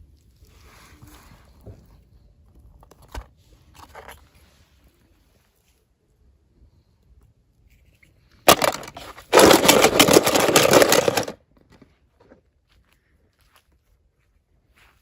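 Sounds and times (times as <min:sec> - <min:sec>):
packaging crinkling: 0:08.5 - 0:11.4
packaging ripping: 0:08.5 - 0:11.4.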